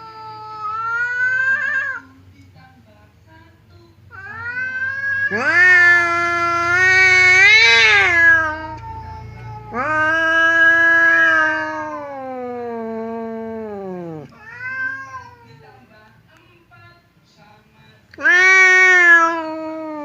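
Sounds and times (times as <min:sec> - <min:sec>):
cats yowling: 0:00.0 - 0:02.1, 0:04.1 - 0:15.5, 0:18.2 - 0:20.0.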